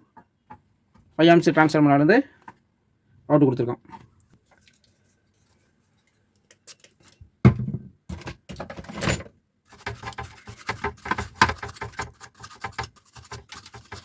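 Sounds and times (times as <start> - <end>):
quick scratchy clicks and scrapes: 9.7 - 14.0.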